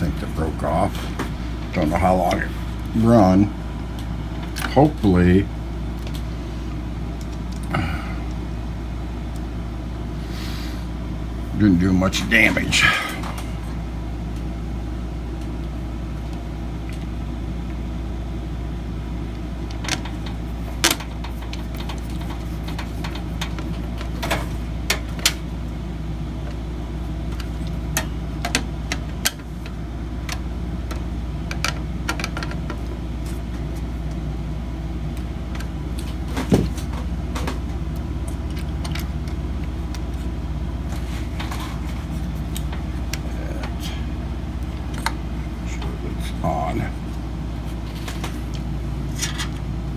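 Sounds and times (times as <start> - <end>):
steady low hum: 0.0 - 49.9
clicks and taps of computer parts: 27.3 - 32.9.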